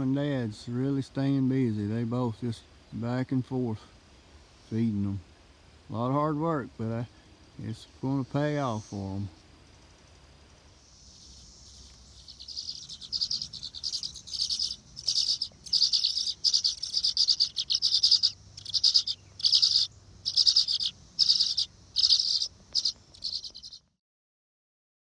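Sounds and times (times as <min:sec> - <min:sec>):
nestlings chirping: 0:10.9 - 0:23.8.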